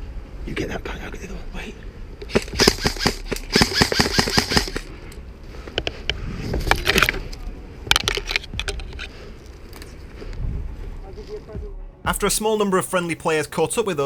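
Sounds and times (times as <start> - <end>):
airsoft rifles firing bursts: 2.3 - 4.9.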